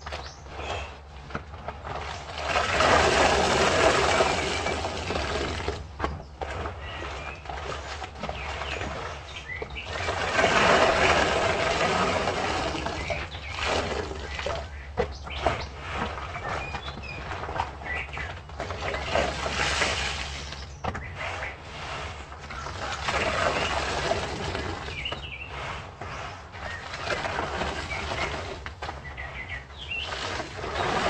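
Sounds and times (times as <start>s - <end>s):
faint birdsong: 0.0s - 2.9s, 3.9s - 31.0s
water splashing: 1.8s - 5.9s, 6.5s - 16.4s, 18.6s - 20.8s.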